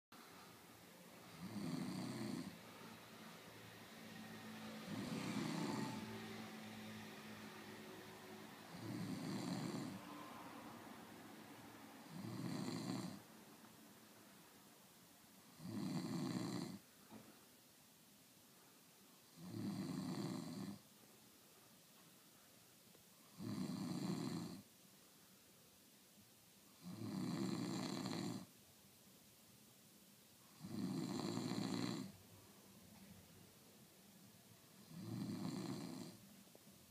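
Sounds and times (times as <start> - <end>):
person snoring loudly: 1.2 - 2.9, 4.6 - 7.8, 8.7 - 10.0, 12.1 - 13.2, 15.5 - 16.8, 19.3 - 20.8, 23.3 - 24.6, 26.8 - 28.5, 30.6 - 32.1, 34.8 - 36.2.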